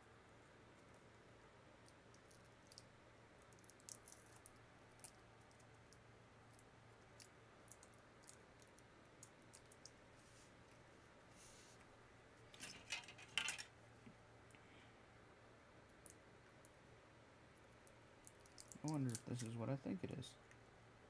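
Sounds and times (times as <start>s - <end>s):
faint low hum: 0.0s - 21.0s.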